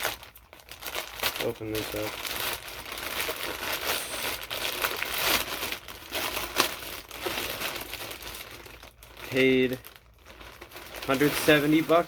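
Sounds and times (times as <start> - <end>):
wrapping crinkling: 0.0 - 12.0.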